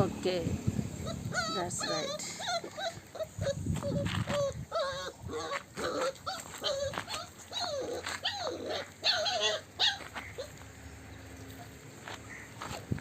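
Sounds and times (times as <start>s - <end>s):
puppies whining and yelping: 0.9s - 10.6s.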